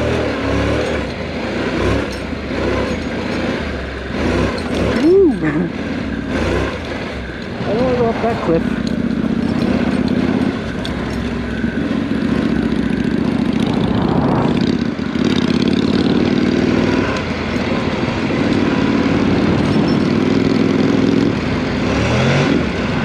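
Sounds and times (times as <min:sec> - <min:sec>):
motorcycle engine running: 0:00.0 - 0:23.0
wind rushing: 0:13.6 - 0:15.1.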